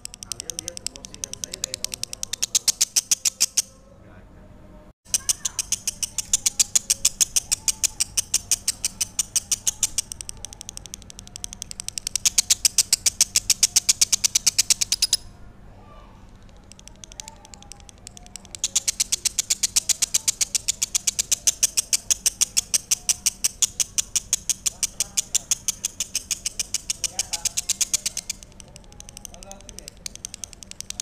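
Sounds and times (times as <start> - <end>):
bird chirping shrilly: 0.2 - 3.7, 5.1 - 10.7, 11.6 - 15.3, 18.5 - 28.5.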